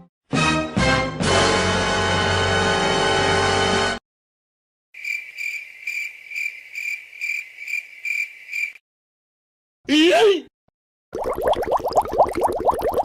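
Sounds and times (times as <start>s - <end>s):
crickets chirping: 5.0s - 8.8s.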